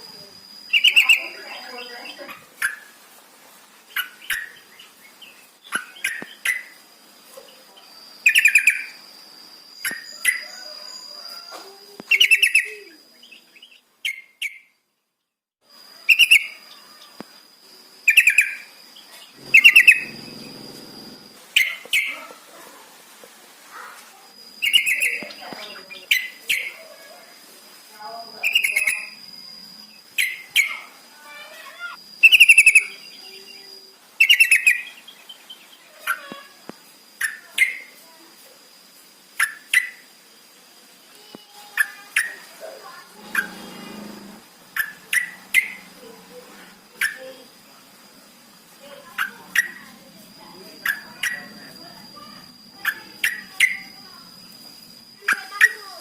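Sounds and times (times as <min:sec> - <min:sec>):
bulbul bubbling call: 0:19.4 - 0:20.5
short sharp bird calls: 0:19.4 - 0:21.7.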